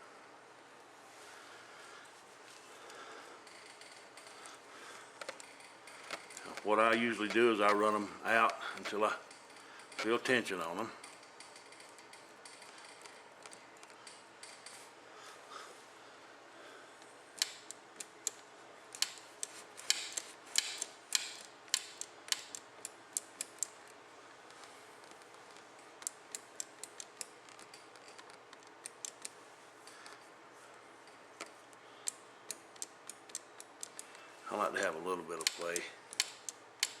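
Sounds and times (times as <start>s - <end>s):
small sharp clicks: 17.0s - 23.8s, 24.5s - 30.2s, 31.4s - 34.3s, 35.4s - 37.0s.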